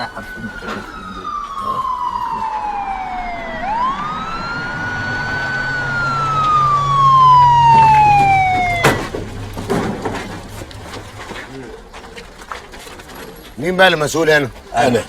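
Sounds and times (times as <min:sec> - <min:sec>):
police siren wailing: 0:00.0 - 0:11.0.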